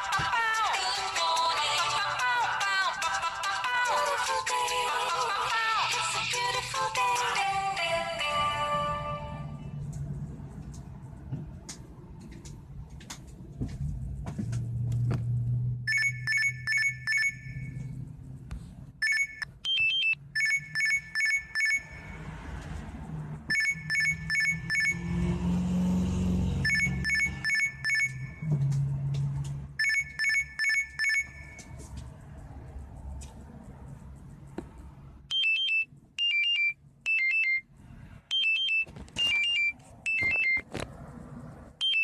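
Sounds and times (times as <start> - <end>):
electronic phone ringing tone: 15.9 - 17.8, 19.0 - 22.2, 23.5 - 25.1, 26.6 - 28.5, 29.8 - 31.6, 35.3 - 37.6, 38.3 - 40.6.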